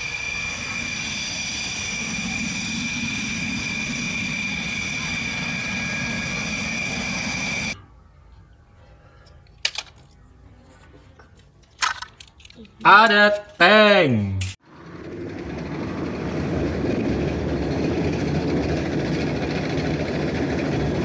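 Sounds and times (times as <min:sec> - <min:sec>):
toy jet engine whine: 0:00.0 - 0:07.8.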